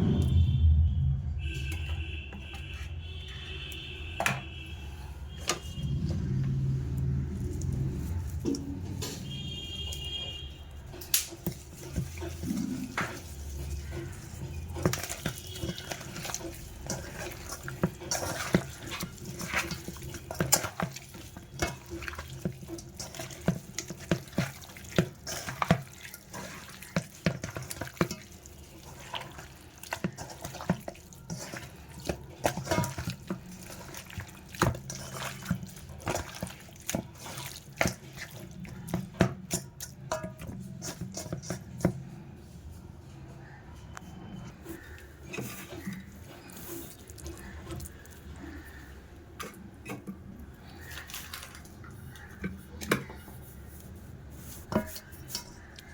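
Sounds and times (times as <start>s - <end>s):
liquid running or splashing: 5.4s - 42.1s, 44.5s - 55.9s
utensils and dishes clinking: 10.8s - 42.2s, 44.0s - 55.9s.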